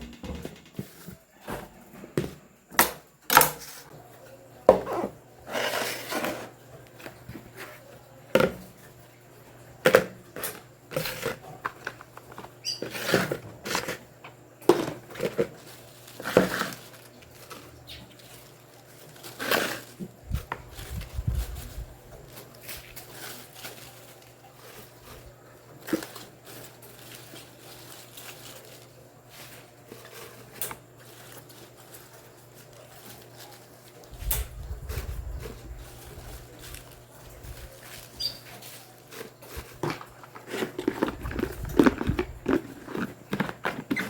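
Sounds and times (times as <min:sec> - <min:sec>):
household items knocking on table: 0:00.0 - 0:01.6.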